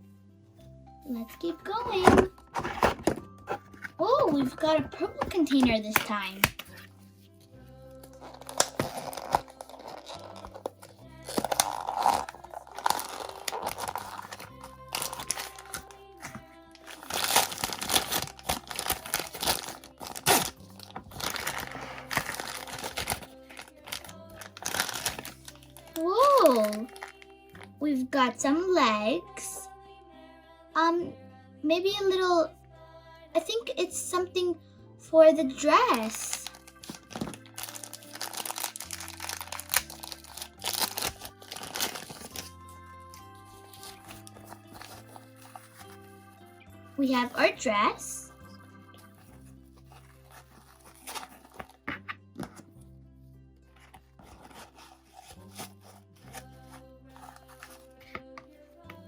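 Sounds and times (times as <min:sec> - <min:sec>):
soft background music: 0:00.0 - 0:59.0
plastic bag crinkling: 0:08.0 - 0:27.4, 0:35.9 - 0:46.1, 0:47.1 - 0:52.6, 0:53.8 - 0:58.4.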